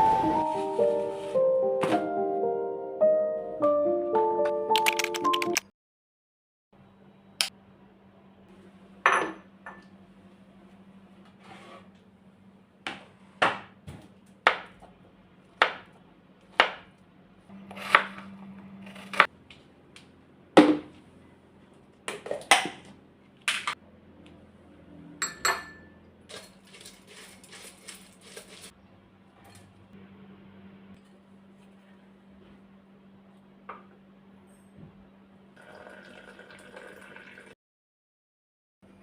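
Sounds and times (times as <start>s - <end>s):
dishes and utensils clinking: 25.2s - 28.7s.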